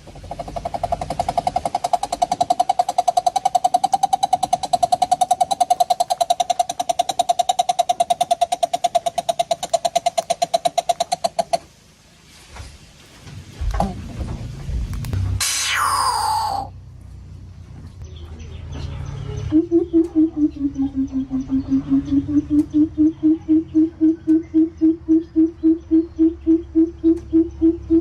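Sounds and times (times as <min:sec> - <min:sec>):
bird giving pulsed notes: 0:00.4 - 0:11.5, 0:15.4 - 0:16.7, 0:19.5 - 0:28.0
faint low rumbling: 0:11.7 - 0:28.0.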